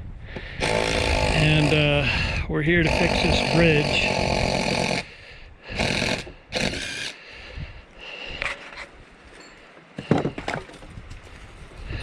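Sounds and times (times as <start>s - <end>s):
knocks and scrapes on wood: 10.0s - 11.0s.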